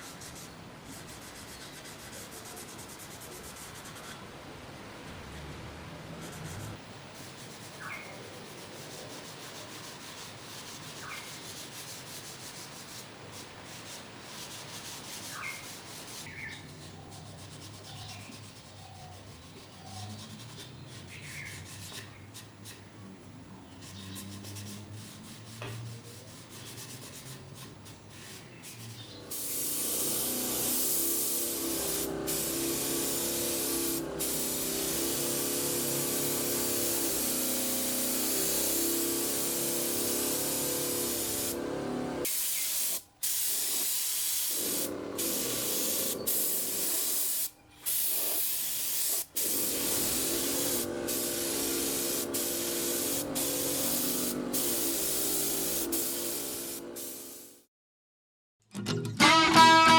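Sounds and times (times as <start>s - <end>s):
aerosol spray can hissing: 27.2s - 57.6s.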